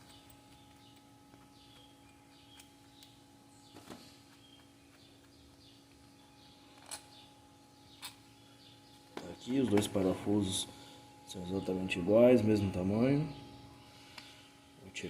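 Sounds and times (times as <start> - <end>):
faint birds chirping: 0.0 - 15.0
low steady hum: 0.0 - 15.0.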